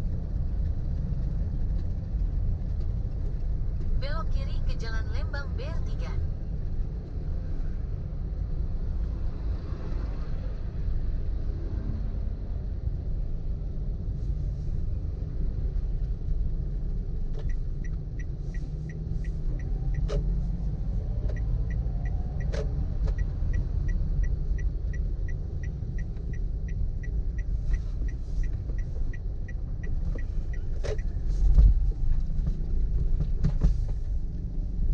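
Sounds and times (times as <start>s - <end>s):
turn signal ticking: 0.0s - 9.1s, 12.8s - 34.9s
car road and engine rumble: 0.0s - 34.9s
sat-nav voice instruction: 4.0s - 6.2s.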